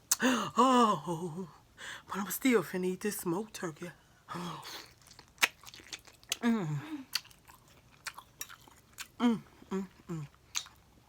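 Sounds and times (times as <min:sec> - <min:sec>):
wet chewing mouth clicks: 0:04.9 - 0:06.5, 0:07.1 - 0:09.2, 0:10.1 - 0:10.8.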